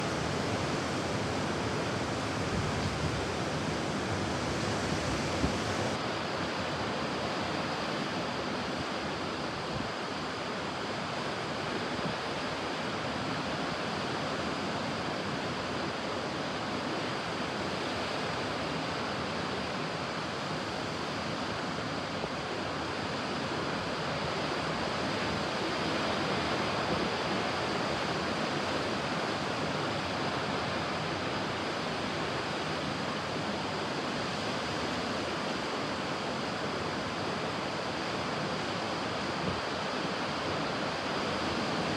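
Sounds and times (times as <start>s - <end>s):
ocean waves breaking: 0.0s - 6.0s.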